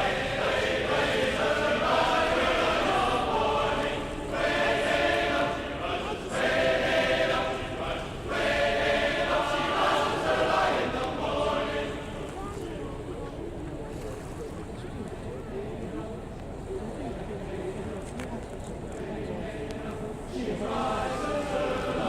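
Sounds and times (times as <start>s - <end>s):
choir singing held notes: 0.0s - 12.4s, 19.0s - 22.0s.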